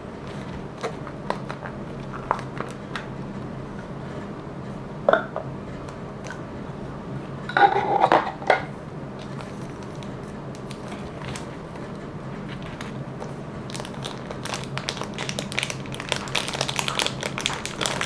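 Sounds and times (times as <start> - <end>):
plastic items clacking and clinking: 12.5 - 18.0.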